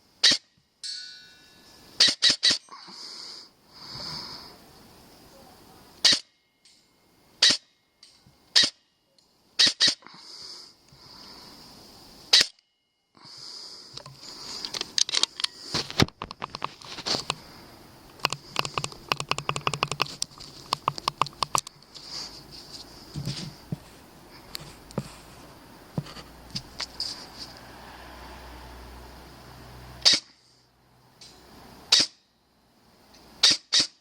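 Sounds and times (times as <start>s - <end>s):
airsoft gun firing: 33.4s - 34.0s.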